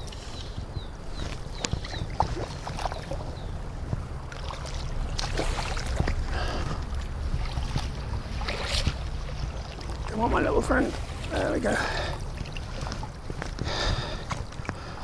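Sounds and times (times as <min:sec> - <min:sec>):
river water splashing: 0:00.0 - 0:15.0.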